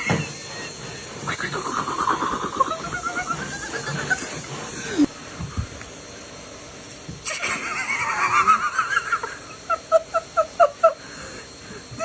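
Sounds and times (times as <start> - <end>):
person giggling: 7.2 - 11.0.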